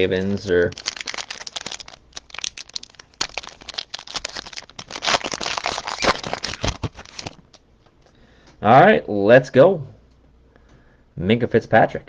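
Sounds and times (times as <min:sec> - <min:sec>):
plastic wrapping crinkling: 0:00.0 - 0:08.1.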